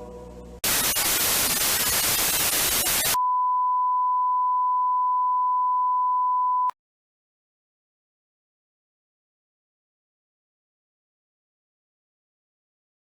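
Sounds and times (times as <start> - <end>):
television static hiss: 0.6 - 3.2.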